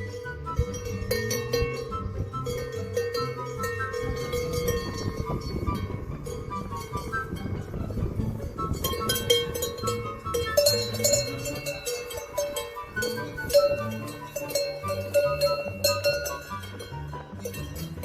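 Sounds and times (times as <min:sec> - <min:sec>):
bell-like clinking percussion: 0:00.0 - 0:07.6, 0:08.3 - 0:18.0
melody over bass line: 0:00.0 - 0:18.0.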